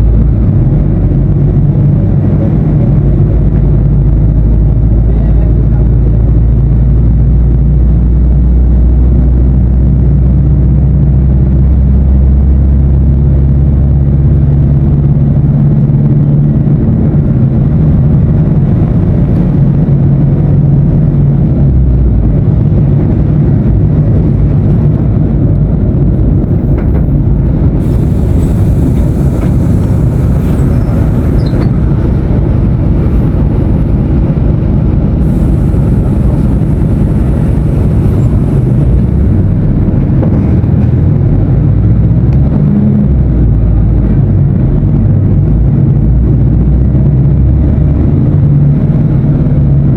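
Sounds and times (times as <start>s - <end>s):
bus diesel engine running: 0.0s - 49.9s
hiss: 27.8s - 31.7s, 35.2s - 39.1s.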